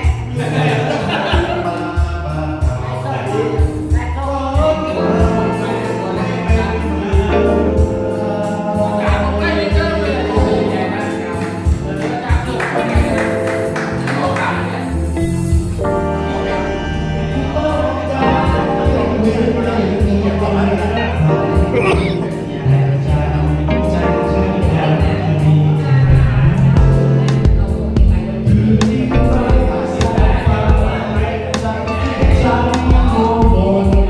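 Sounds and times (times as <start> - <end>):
person singing: 21.2 - 34.0
backing vocals: 21.5 - 23.0, 25.8 - 34.0
steady drum beat: 26.0 - 31.0, 32.2 - 34.0.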